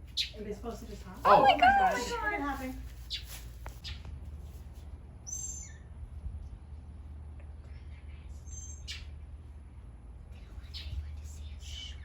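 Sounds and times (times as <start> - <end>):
faint low rumble: 4.1 - 12.0
small bird chirping: 5.3 - 5.9, 8.4 - 9.1.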